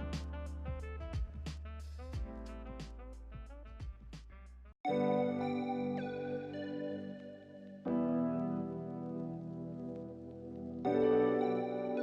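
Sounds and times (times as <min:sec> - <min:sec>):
held keyboard chords: 0:04.8 - 0:12.0.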